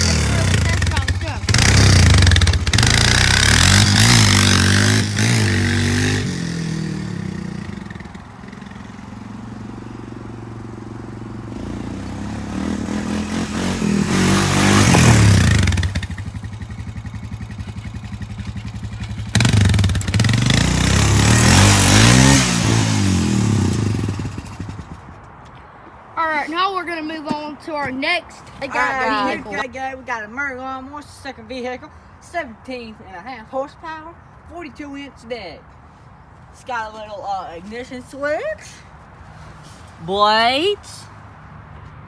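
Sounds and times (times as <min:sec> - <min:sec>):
quad engine revving: 0:00.0 - 0:25.0.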